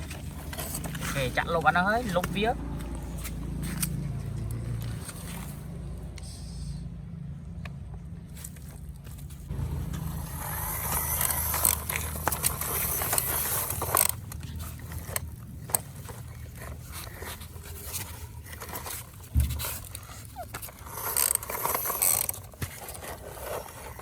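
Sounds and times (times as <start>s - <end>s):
plastic toy trucks rattling: 0.0s - 2.6s, 8.5s - 24.0s
steady low hum: 0.0s - 20.1s.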